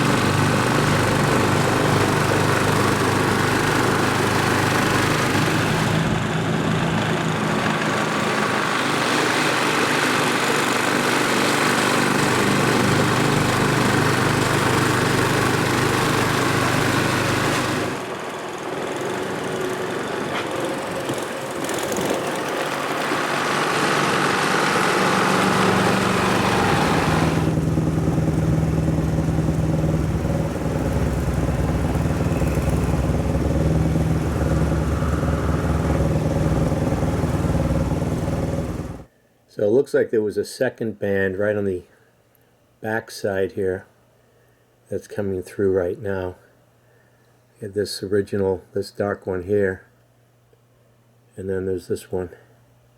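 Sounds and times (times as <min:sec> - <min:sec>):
snowblower engine running: 0:00.0 - 0:39.1
higher rushing noise: 0:22.9 - 0:39.1.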